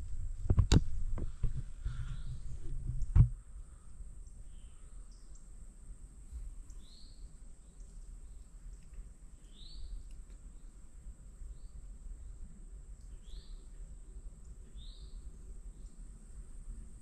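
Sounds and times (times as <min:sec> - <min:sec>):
low rumble: 0:00.0 - 0:04.2
bird chirping: 0:01.9 - 0:02.5, 0:03.6 - 0:05.5, 0:06.6 - 0:10.8, 0:13.0 - 0:13.8, 0:14.4 - 0:16.1
faint ticks: 0:04.2 - 0:05.5, 0:07.7 - 0:09.2, 0:09.9 - 0:10.5.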